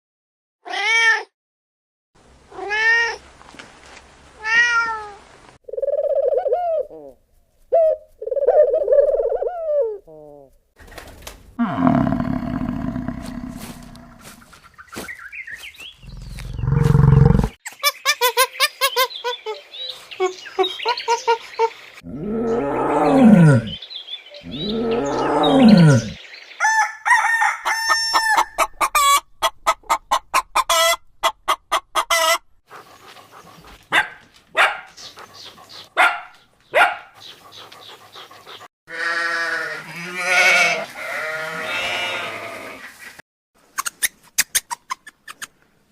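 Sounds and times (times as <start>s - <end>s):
wavering animal call: 22.1s - 23.8s, 24.4s - 26.2s
rooster crowing: 26.6s - 29.2s.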